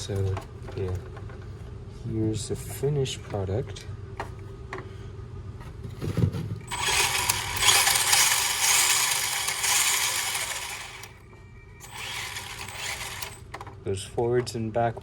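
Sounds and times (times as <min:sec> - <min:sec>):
rc truck tyres and drivetrain: 0:06.7 - 0:11.1, 0:11.8 - 0:13.4.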